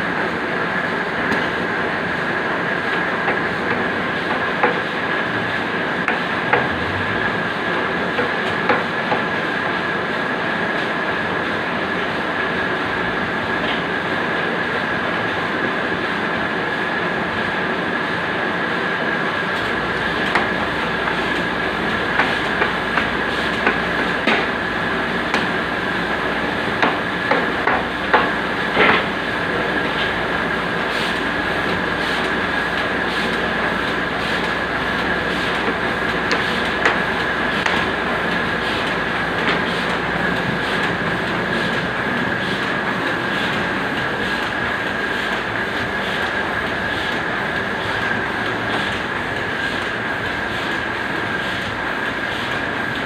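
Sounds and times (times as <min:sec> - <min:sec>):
cutting machine whine: 0:05.3 - 0:08.7.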